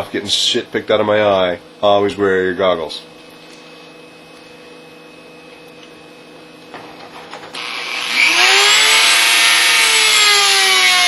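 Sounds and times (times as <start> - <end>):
rotary tool motor whine: 7.6 - 11.0.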